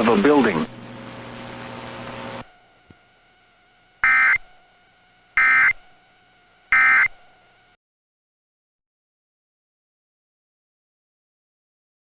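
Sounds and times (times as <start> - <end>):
harsh buzzy data tones: 0.0 - 7.8.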